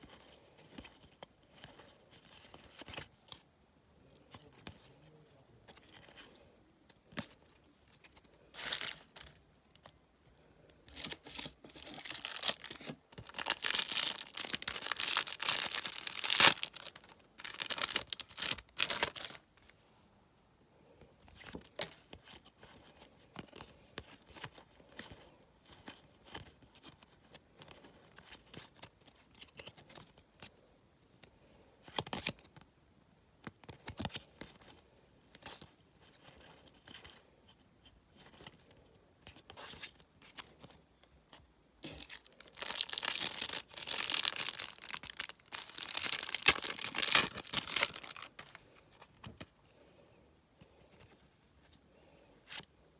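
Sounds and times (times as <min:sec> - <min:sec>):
wrapper tearing and crinkling: 0:08.6 - 0:09.1, 0:10.9 - 0:19.4, 0:41.8 - 0:48.6.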